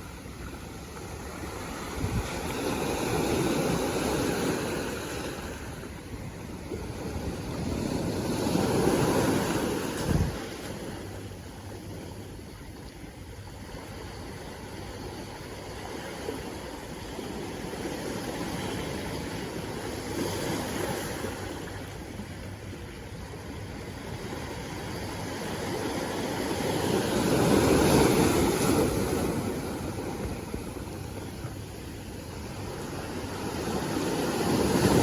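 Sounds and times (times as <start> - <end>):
sea waves washing ashore: 0.0 - 35.0.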